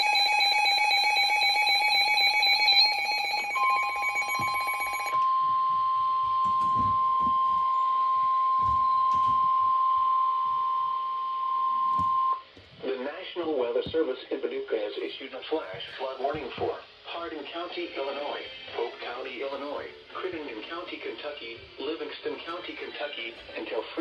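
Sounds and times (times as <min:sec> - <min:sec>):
steady attention tone: 0:00.0 - 0:12.4
warbling electronic alarm: 0:00.0 - 0:12.4.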